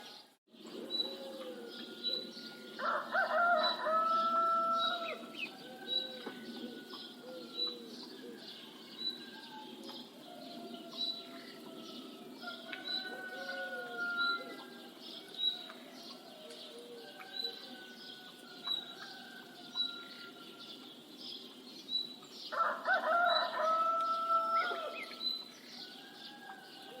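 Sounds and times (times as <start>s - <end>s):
other birds calling: 0.0s - 27.0s
rooster crowing: 1.4s - 7.8s, 10.3s - 15.0s, 22.5s - 25.1s.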